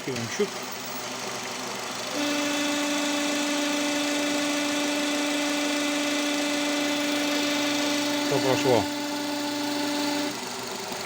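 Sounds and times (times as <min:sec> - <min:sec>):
car engine running: 0:00.0 - 0:11.0
steady buzzing whistle: 0:01.9 - 0:11.0.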